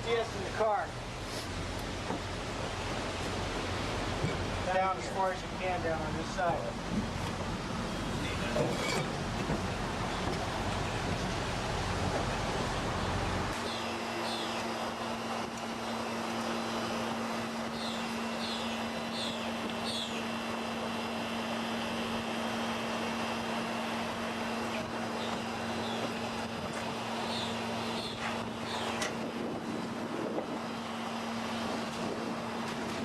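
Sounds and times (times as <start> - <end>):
constant hum: 0.0 - 33.0
outdoor background noise: 0.0 - 33.0
small birds chirping: 13.7 - 14.6, 17.7 - 20.3, 27.2 - 29.0.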